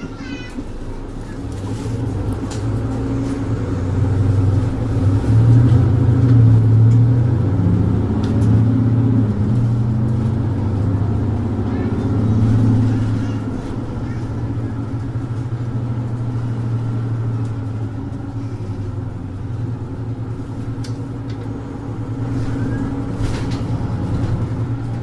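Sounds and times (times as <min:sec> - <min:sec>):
bus diesel engine drone: 0:00.0 - 0:25.0.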